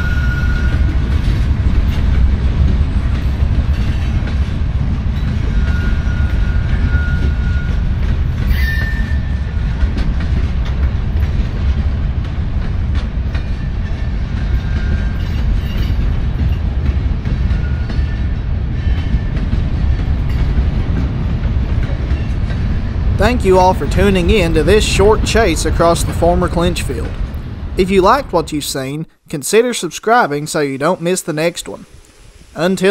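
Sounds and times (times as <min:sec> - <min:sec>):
wheel squeal: 0:00.0 - 0:00.9, 0:05.5 - 0:07.8, 0:08.4 - 0:09.5, 0:13.9 - 0:16.0, 0:17.6 - 0:19.3
freight train rumbling: 0:00.0 - 0:32.9.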